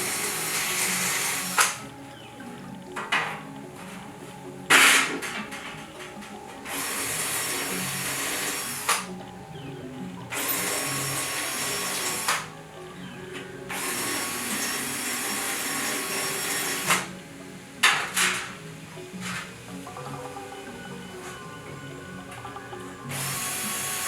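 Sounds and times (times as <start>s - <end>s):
power drill running: 0.0s - 2.0s, 6.6s - 9.2s, 10.3s - 12.6s, 13.6s - 17.2s, 22.4s - 24.0s.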